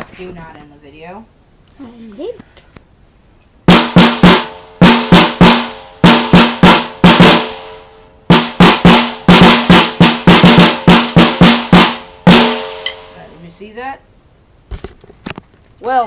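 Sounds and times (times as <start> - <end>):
snare drum hits ringing: 3.7 - 13.2.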